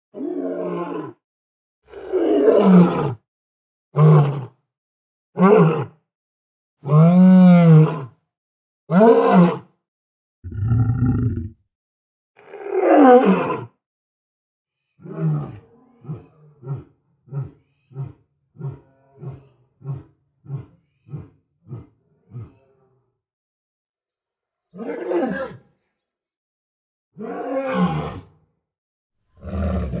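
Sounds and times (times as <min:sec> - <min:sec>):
lion roaring: 0:01.9 - 0:03.1, 0:10.5 - 0:11.6, 0:15.1 - 0:22.6, 0:29.4 - 0:30.0
lion grunting: 0:10.5 - 0:11.6.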